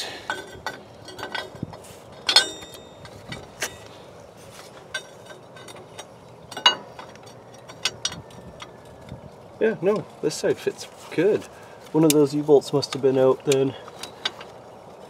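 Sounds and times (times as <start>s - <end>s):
metal parts clinking and knocking: 0.0s - 10.1s, 12.0s - 15.0s
ringing metal clank: 0.2s - 3.9s, 4.8s - 8.9s.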